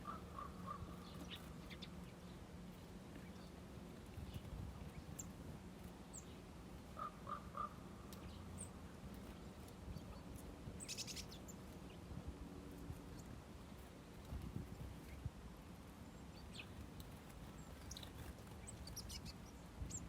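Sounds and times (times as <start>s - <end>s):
small birds chirping: 0.0s - 12.1s, 16.0s - 20.0s
low steady background hum: 0.0s - 20.0s
bird buzzy call: 7.0s - 7.8s.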